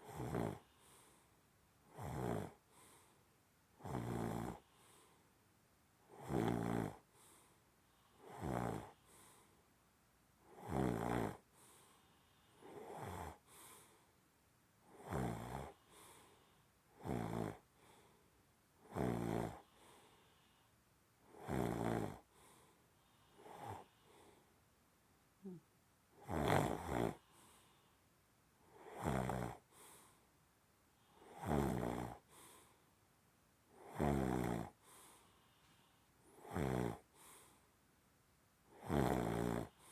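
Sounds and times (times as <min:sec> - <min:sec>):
loud rattling snores: 0:00.0 - 0:00.7, 0:01.9 - 0:02.9, 0:03.8 - 0:04.6, 0:06.1 - 0:07.0, 0:08.2 - 0:09.3, 0:10.5 - 0:11.4, 0:12.6 - 0:13.4, 0:14.9 - 0:16.2, 0:17.0 - 0:17.6, 0:18.9 - 0:19.7, 0:21.3 - 0:22.3, 0:23.4 - 0:24.3, 0:26.2 - 0:27.3, 0:28.8 - 0:29.9, 0:31.2 - 0:32.6, 0:33.8 - 0:35.1, 0:36.4 - 0:37.4, 0:38.7 - 0:39.9
soft breath: 0:00.6 - 0:01.5, 0:02.6 - 0:03.4, 0:04.6 - 0:05.4, 0:07.0 - 0:08.3, 0:08.9 - 0:09.7, 0:11.4 - 0:14.2, 0:15.7 - 0:16.8, 0:17.6 - 0:18.5, 0:19.6 - 0:20.9, 0:22.2 - 0:24.7, 0:25.4 - 0:25.7, 0:27.1 - 0:28.1, 0:29.6 - 0:30.3, 0:32.2 - 0:33.0, 0:34.7 - 0:36.4, 0:37.0 - 0:37.8, 0:39.7 - 0:39.9.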